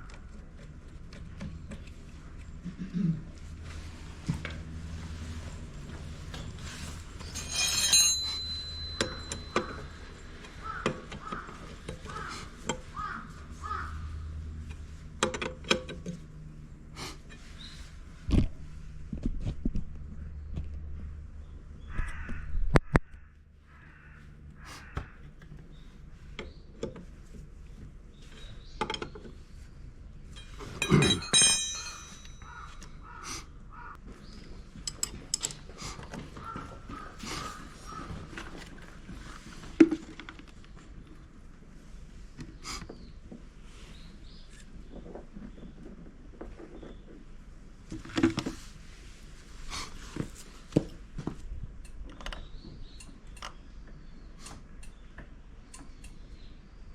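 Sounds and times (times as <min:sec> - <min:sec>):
tools clinking on metal: 0:07.2 - 0:10.1, 0:30.3 - 0:32.9
crows cawing: 0:10.6 - 0:14.2, 0:21.8 - 0:25.3, 0:32.4 - 0:34.0, 0:36.4 - 0:38.3.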